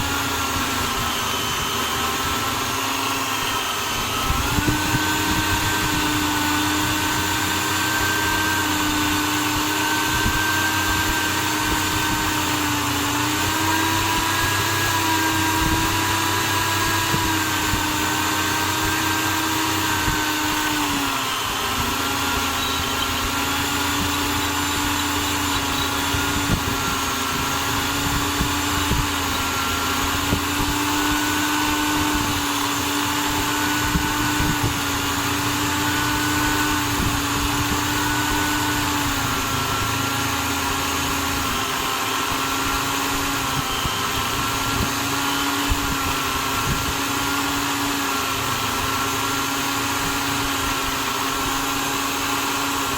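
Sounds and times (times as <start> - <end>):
electric drill motor running: 0.0 - 52.9.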